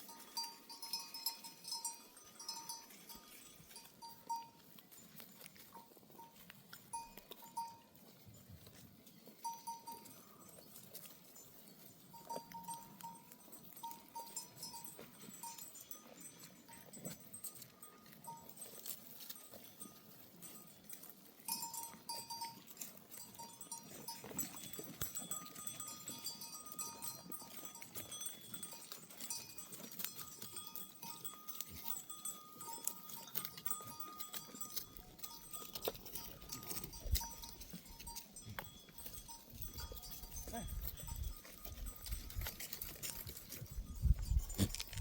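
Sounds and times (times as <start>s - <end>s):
livestock bells clinking: 0.0s - 45.0s.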